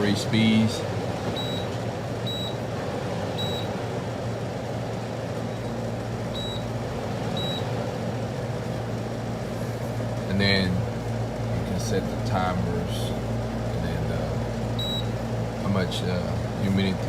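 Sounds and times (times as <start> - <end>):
dehumidifier fan running: 0.0 - 17.0
control panel beeps: 1.3 - 2.6, 3.4 - 3.7, 6.3 - 6.7, 7.3 - 7.7, 14.8 - 15.2.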